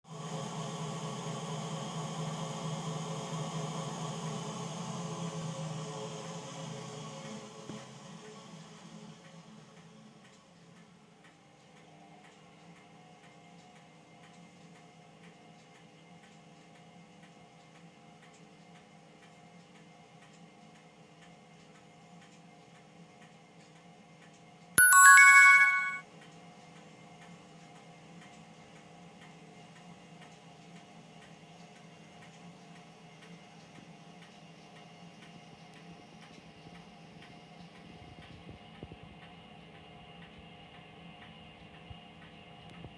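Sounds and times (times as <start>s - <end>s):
electronic beep tune: 24.8s - 26.0s.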